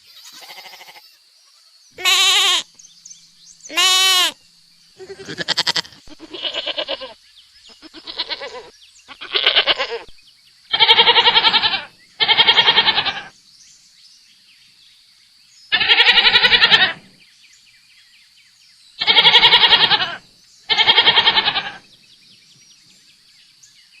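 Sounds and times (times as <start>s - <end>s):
goat bleating: 0.0s - 1.2s, 2.0s - 2.7s, 3.7s - 4.4s, 5.0s - 13.3s, 15.7s - 17.1s, 19.0s - 21.8s.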